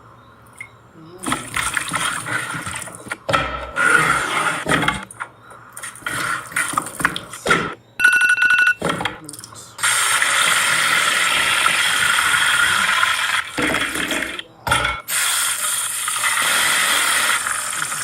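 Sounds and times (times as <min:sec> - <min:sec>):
chicken frying in hot oil: 0:09.8 - 0:14.2, 0:15.1 - 0:18.0.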